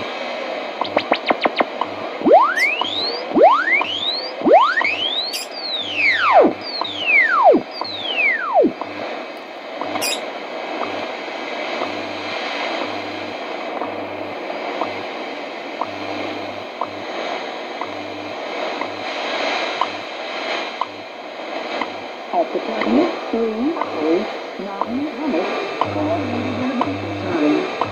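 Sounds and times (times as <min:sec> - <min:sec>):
pulsing low hum: 0:00.0 - 0:27.9
radio static hiss: 0:00.0 - 0:27.9
whistle gliding down in pitch: 0:02.2 - 0:08.7, 0:10.0 - 0:10.2.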